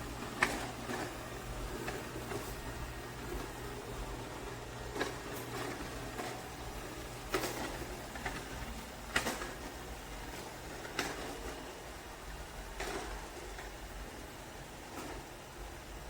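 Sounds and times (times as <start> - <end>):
robot vacuum humming: 0.0 - 16.0.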